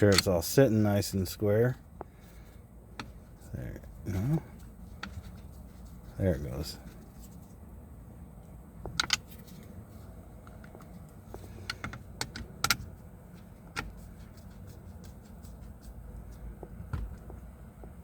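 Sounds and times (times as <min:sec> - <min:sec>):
plastic parts clicking and tapping: 0:10.4 - 0:12.9.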